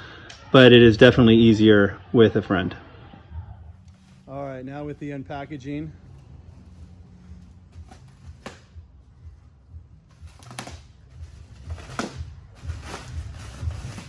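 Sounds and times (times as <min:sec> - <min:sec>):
packaging rustling and scraping: 0:10.1 - 0:14.0.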